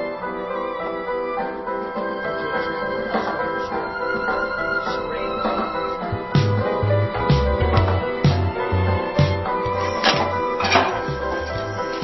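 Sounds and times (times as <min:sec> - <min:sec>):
background music with beat: 0:00.0 - 0:12.0.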